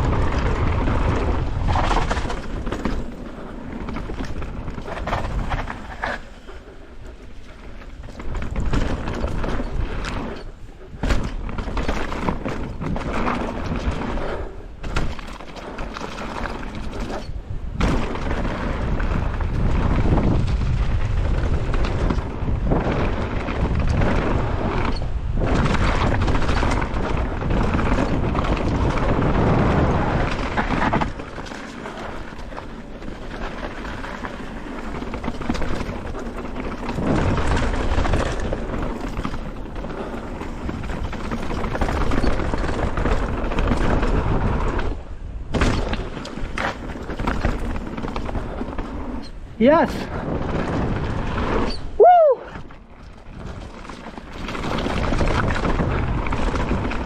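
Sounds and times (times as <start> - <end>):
bike tyre noise: 0.0 - 57.0
wind buffeting microphone: 0.0 - 57.0
rattling knocks over rough ground: 7.6 - 14.2, 14.8 - 49.3, 52.6 - 57.0.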